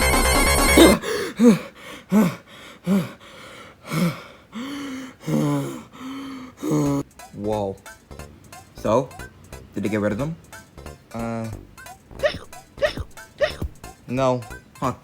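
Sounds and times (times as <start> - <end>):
person imitating hiccups: 0.7 - 1.1, 12.1 - 13.9
held vocal tones: 0.7 - 7.1, 11.5 - 13.9.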